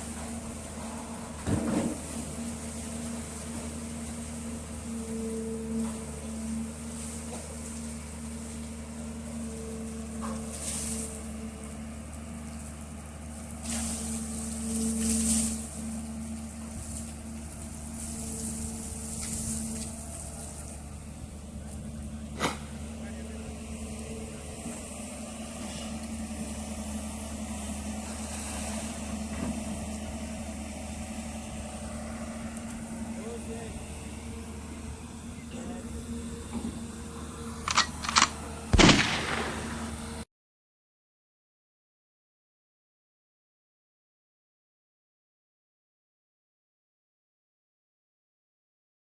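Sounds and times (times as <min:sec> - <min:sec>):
excavator diesel engine humming: 0:00.0 - 0:40.2
brief knock: 0:22.4 - 0:22.9.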